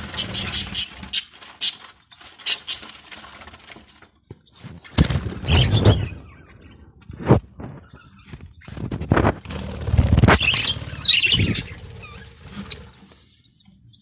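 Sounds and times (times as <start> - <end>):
budgerigars chirping: 0.0 - 2.9, 10.4 - 14.0
wings flapping: 0.0 - 6.1, 8.7 - 13.2.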